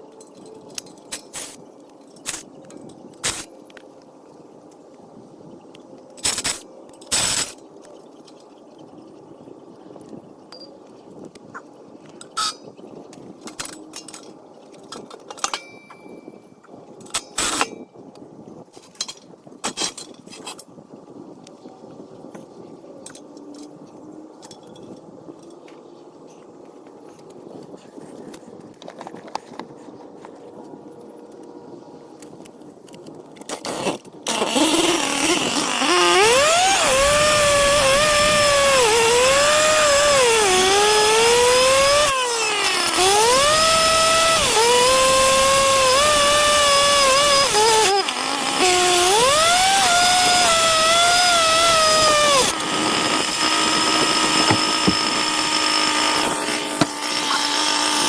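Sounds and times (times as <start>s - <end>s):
power saw cutting concrete: 34.5s - 58.0s.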